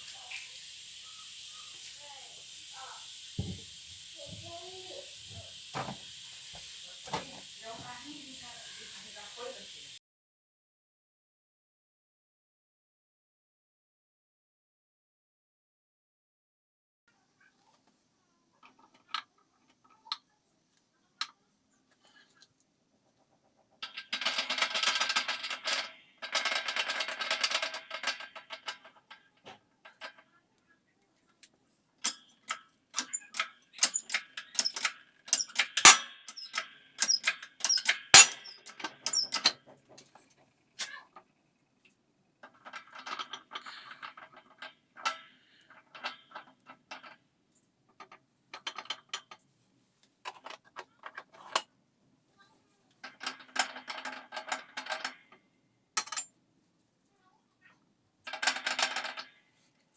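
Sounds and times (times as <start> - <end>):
tools and metal parts clinking: 32.0 - 39.6, 56.0 - 56.3.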